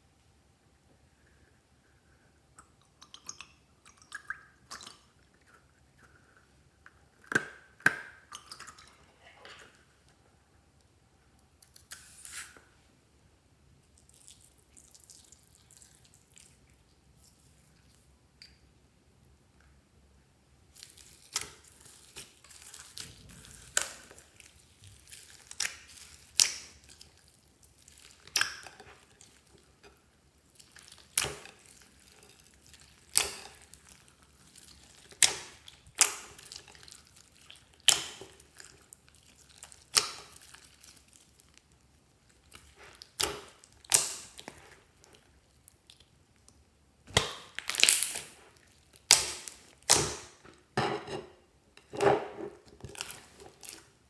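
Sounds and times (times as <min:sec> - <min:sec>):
slime popping and crackling: 0:20.8 - 0:29.7, 0:30.5 - 0:45.1, 0:47.1 - 0:50.4.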